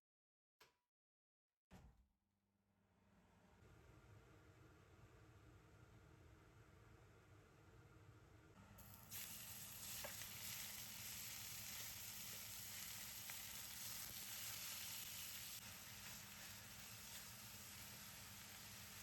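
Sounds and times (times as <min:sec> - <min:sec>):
food sizzling in a hot pan: 0:08.8 - 0:19.0.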